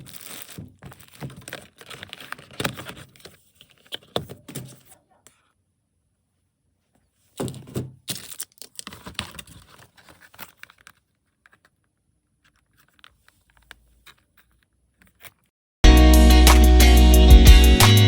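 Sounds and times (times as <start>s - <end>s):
packaging tearing and crumpling: 0.0s - 4.1s, 8.1s - 11.7s.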